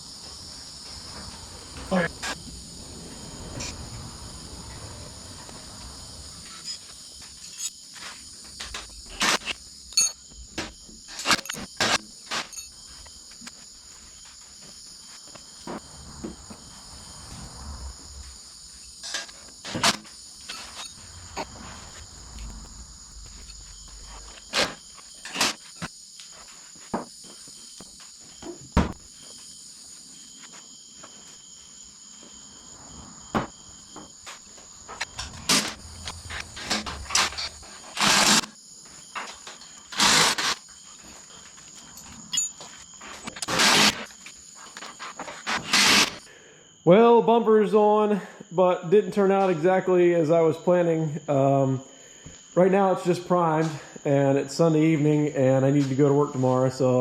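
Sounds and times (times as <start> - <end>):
crickets chirping: 0.0 - 57.0.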